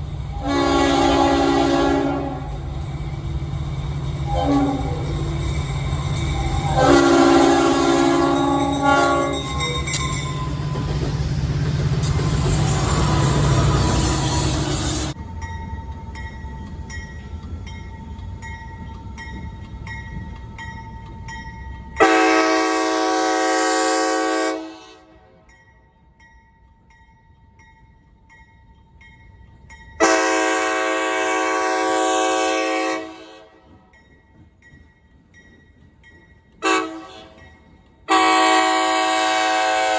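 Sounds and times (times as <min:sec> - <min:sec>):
train rumble: 0:00.0 - 0:39.9
locomotive air horn blasts: 0:00.4 - 0:02.6, 0:04.3 - 0:05.4, 0:06.6 - 0:09.8, 0:22.0 - 0:25.4, 0:30.0 - 0:33.6, 0:36.6 - 0:37.4, 0:38.1 - 0:39.9.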